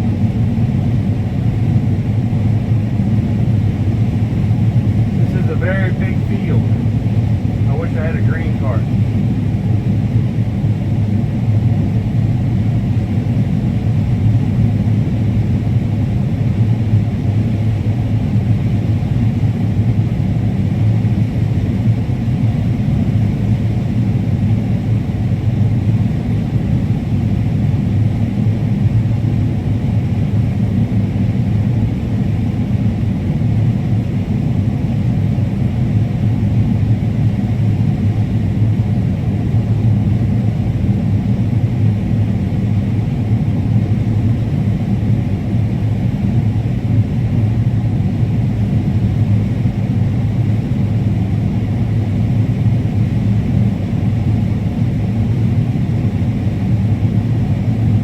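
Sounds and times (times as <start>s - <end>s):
combine harvester drone: 0.0s - 58.0s.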